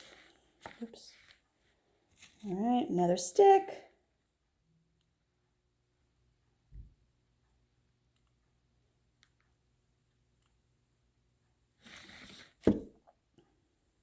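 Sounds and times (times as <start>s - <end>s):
brief scrape: 11.8s - 12.6s
loud thump: 12.6s - 12.9s.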